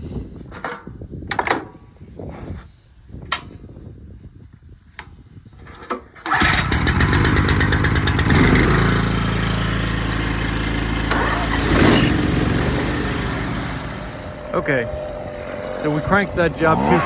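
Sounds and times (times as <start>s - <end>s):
pressure washer engine running: 6.7s - 14.8s.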